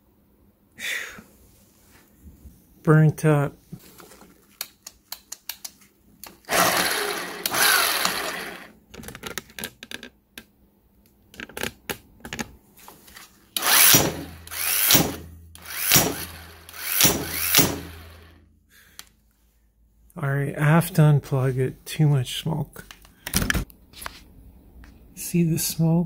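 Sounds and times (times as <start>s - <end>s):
impact wrench motor bursts: 6.5s - 8.7s, 13.6s - 18.4s.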